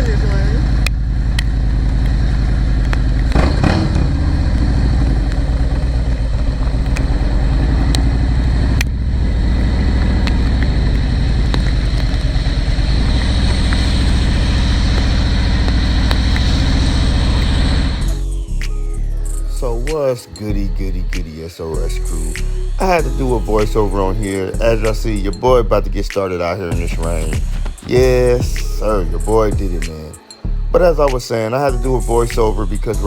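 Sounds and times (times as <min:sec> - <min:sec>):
motorcycle engine running: 0:00.0 - 0:18.6.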